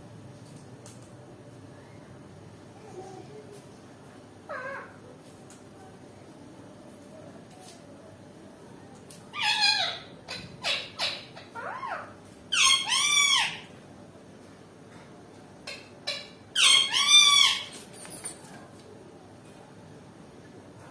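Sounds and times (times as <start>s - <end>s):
parakeet screeching: 9.3s - 13.7s, 15.7s - 17.8s.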